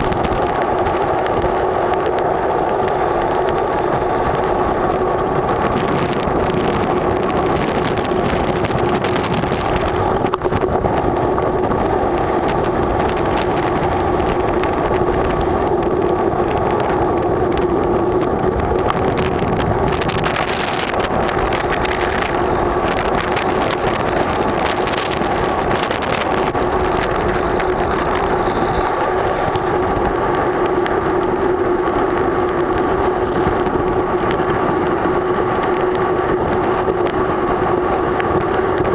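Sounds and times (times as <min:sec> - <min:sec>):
constant low hum: 0:00.0 - 0:38.9
storm wind roaring: 0:00.0 - 0:38.9
high steady tone: 0:26.2 - 0:33.6.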